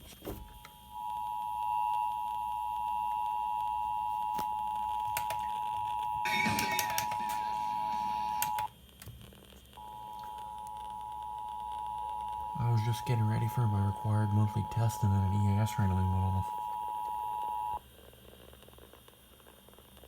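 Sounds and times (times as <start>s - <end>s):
two-tone alert signal: 6.0s - 8.7s.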